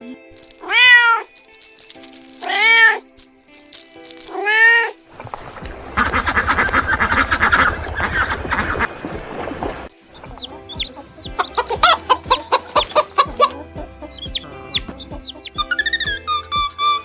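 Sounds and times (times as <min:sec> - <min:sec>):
cat meowing: 0:00.6 - 0:01.3, 0:02.4 - 0:03.0, 0:04.3 - 0:05.0.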